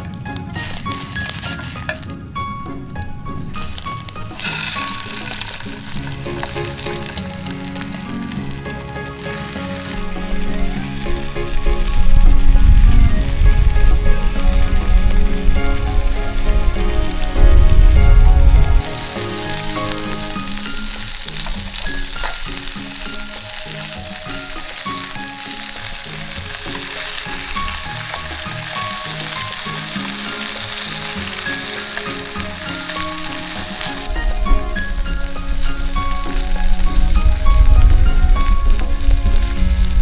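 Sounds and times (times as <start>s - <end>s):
light background music: 0.0s - 40.0s
shrimp sizzling in oil: 0.0s - 40.0s
low rumble: 10.0s - 21.8s, 34.1s - 40.0s.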